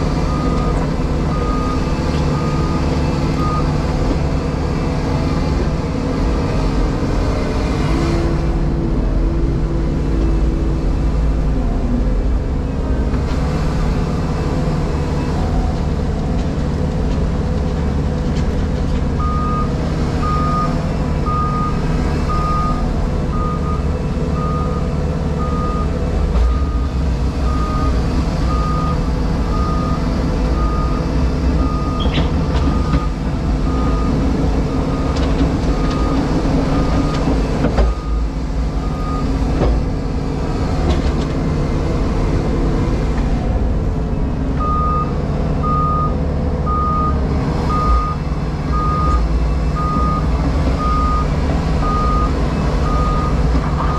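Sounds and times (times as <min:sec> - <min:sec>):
heavy diesel engine running: 0:00.0 - 0:53.9
reversing alarm beeping: 0:37.8 - 0:39.4, 0:44.6 - 0:53.9.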